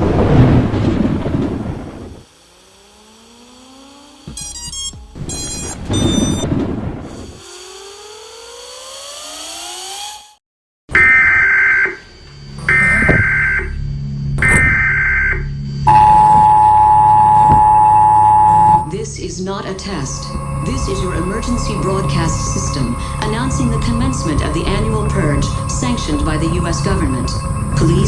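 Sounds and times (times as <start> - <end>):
rumbling boom: 0.0 - 2.2
rising wailing tones: 0.0 - 6.4, 12.6 - 28.0
short electronic beep bursts: 15.9 - 18.9
high steady alert tone: 15.9 - 28.0.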